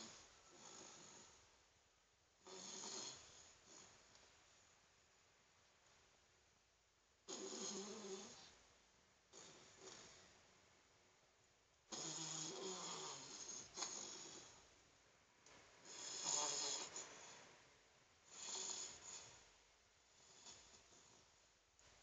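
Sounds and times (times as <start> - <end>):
snoring: 0.0 - 1.4, 2.4 - 3.9, 7.3 - 8.5, 9.3 - 10.1, 11.9 - 14.6, 15.8 - 17.4, 18.3 - 19.4, 20.2 - 21.2
quiet breaths: 0.0 - 6.5, 7.2 - 22.0.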